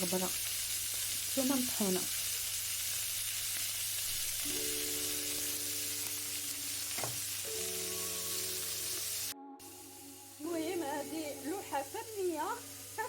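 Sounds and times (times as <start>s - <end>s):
beans sizzling in oil: 0.0s - 13.0s
background music held notes: 4.4s - 13.0s.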